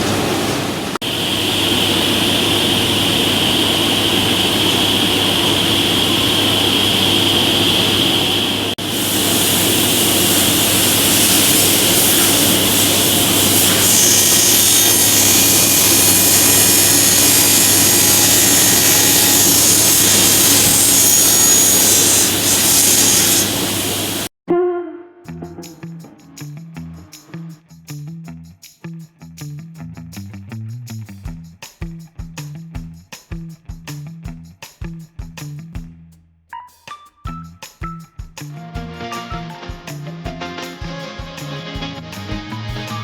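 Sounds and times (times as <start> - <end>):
panel saw running: 1.0 - 24.3.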